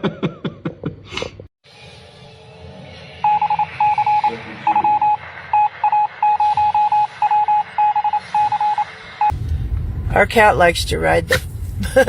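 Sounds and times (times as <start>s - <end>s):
electronic beeper short beeps: 3.3s - 8.9s.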